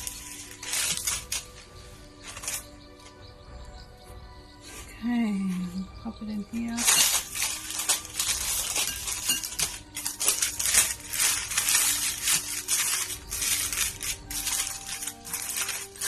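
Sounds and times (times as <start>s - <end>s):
crinkly wrapping being scrunched: 0.0s - 2.8s, 6.7s - 16.0s.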